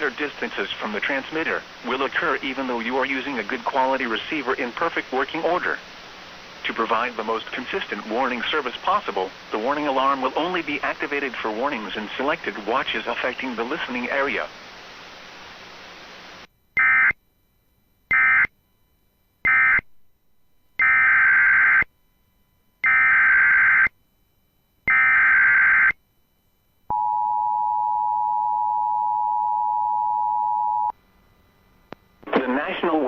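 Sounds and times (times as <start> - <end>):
steady warning alarm tone: 16.8 - 17.2, 18.1 - 18.6, 19.4 - 19.8, 20.8 - 21.9, 22.8 - 24.0, 24.9 - 26.0
radio static: 32.2 - 33.0.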